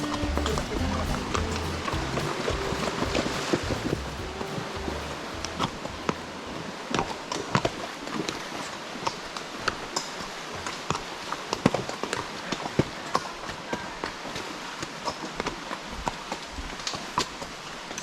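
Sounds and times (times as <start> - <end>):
horse hooves clopping: 0.0 - 6.6.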